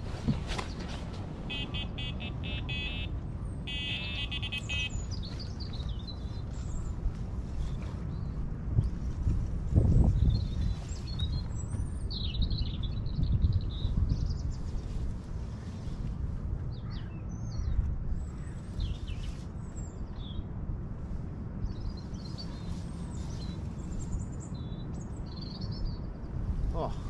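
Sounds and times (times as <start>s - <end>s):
small birds chirping: 1.5s - 8.4s.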